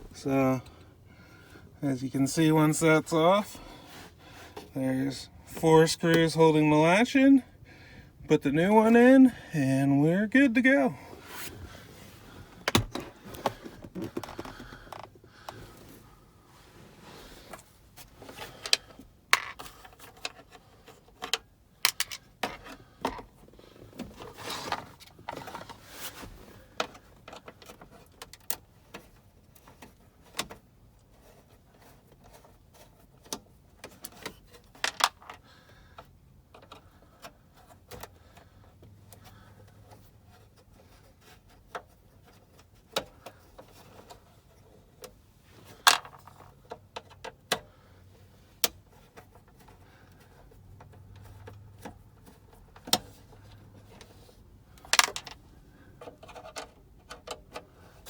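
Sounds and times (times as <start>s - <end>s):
small screws and plastic parts handled: 12.6s - 15.6s, 18.2s - 23.3s, 26.8s - 35.4s, 39.2s - 47.7s, 48.6s - 58.0s.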